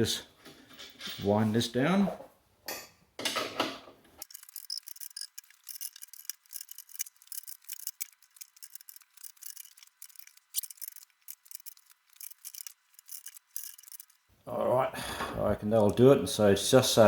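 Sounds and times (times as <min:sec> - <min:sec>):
metallic ticks and clicks: 0:04.2 - 0:14.2.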